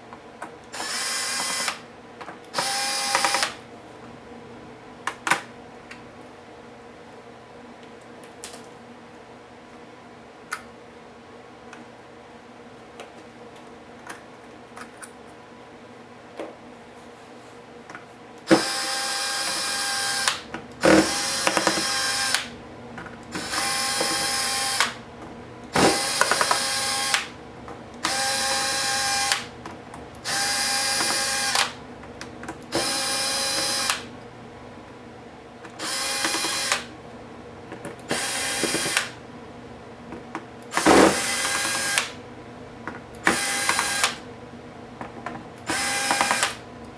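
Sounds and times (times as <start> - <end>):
cordless power driver running: 0.8 - 1.9, 2.6 - 3.6, 18.5 - 22.6, 23.3 - 25.0, 25.7 - 27.4, 28.0 - 29.5, 30.2 - 34.2, 35.7 - 36.9, 38.0 - 39.2, 40.7 - 42.2, 43.2 - 44.3, 45.6 - 46.7.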